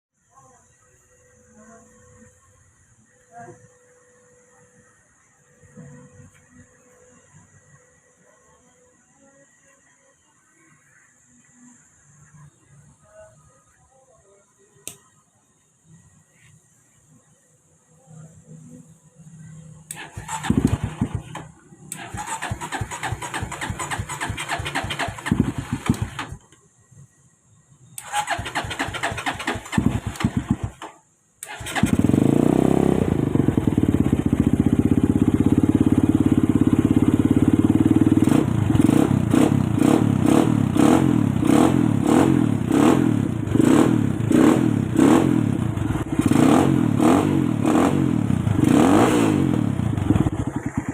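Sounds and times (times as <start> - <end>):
motorcycle engine revving: 19.9 - 26.4, 28.0 - 30.8, 31.4 - 50.9.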